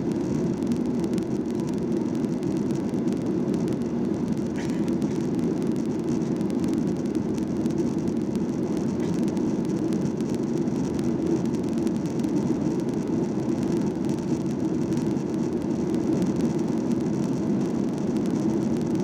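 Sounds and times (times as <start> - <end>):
airliner cabin noise: 0.0 - 19.0.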